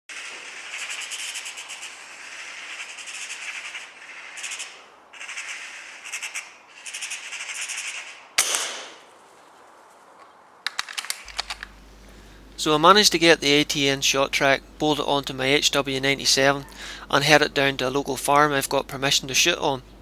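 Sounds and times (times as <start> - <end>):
pulsing rasping hiss: 0.1 - 8.0
air rifle shot: 8.0 - 9.1.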